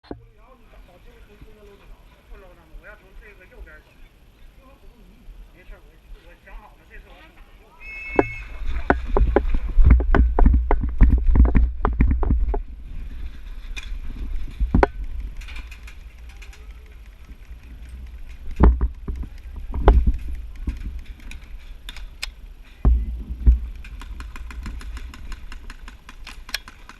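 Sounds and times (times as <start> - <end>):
irregular knocks and thumps: 0.0 - 0.4, 8.1 - 12.8, 14.1 - 16.1, 17.2 - 21.6, 22.8 - 25.9
low rumble: 22.5 - 25.4.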